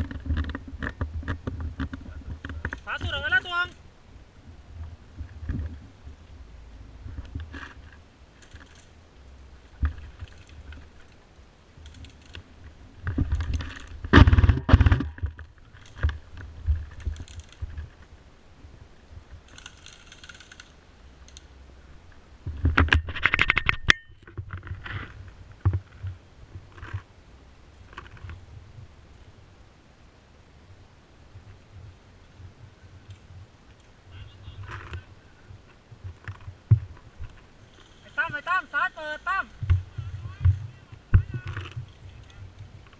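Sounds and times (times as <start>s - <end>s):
gear rustling and knocking: 0.0s - 3.8s, 7.0s - 9.0s, 9.6s - 18.1s, 19.3s - 21.5s, 34.6s - 38.4s, 39.5s - 42.9s
rapid sharp clicks: 19.5s - 21.5s.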